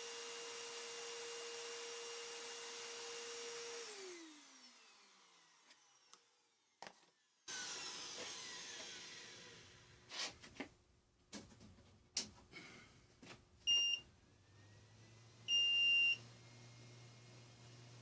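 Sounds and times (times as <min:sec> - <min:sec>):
motor whirring winding down: 0:00.0 - 0:06.7, 0:07.5 - 0:09.9
router motor whining: 0:00.0 - 0:10.0.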